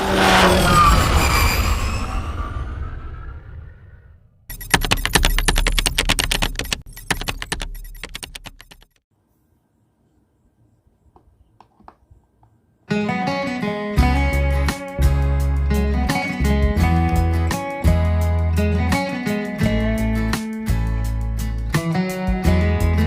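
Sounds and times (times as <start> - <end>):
music with fast clicking beat: 4.5 - 9.0
plucked guitar music: 12.9 - 23.0.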